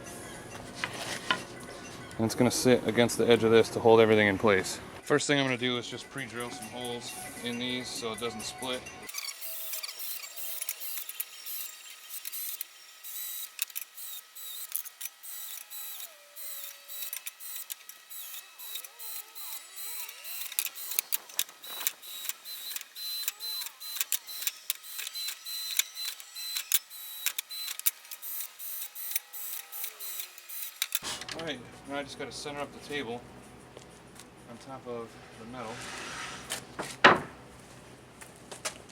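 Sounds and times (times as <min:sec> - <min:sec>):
cordless drill drilling wood: 0:09.1 - 0:31.0.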